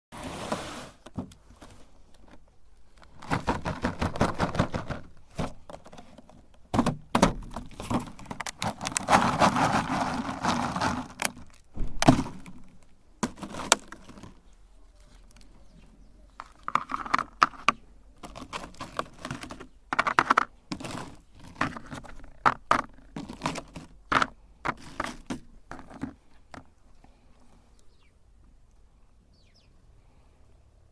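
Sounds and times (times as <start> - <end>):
meat grinder crushing hard candy: 8.3 - 11.5.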